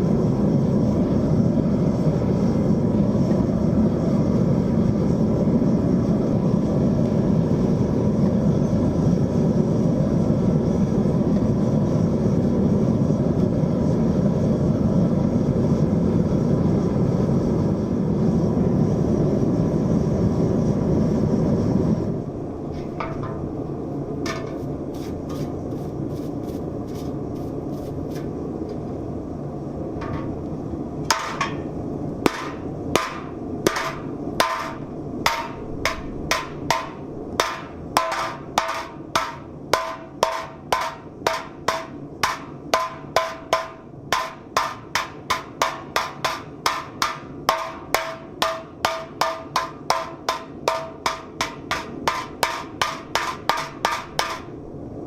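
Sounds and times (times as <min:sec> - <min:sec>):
low rushing noise: 0:00.0 - 0:46.0, 0:50.7 - 0:55.0
hammer blows on copper bowl: 0:32.3 - 0:54.5.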